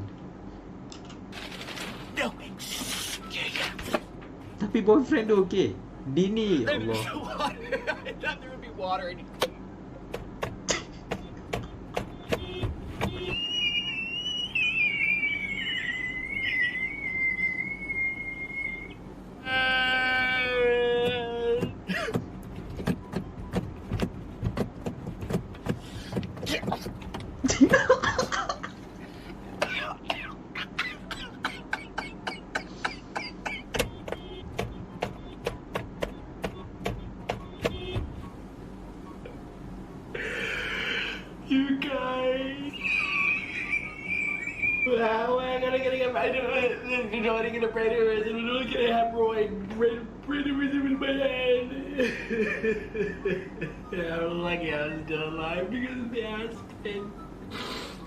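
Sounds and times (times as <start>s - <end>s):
high whistle-like tone sliding down: 13.2s - 19.0s
pitched voice-like wail: 13.5s - 21.8s, 42.6s - 45.3s.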